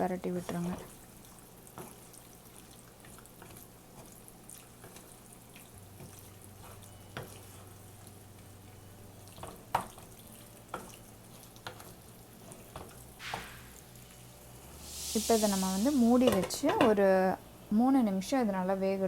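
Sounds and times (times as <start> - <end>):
wet mixing in a pan: 0.0 - 14.2.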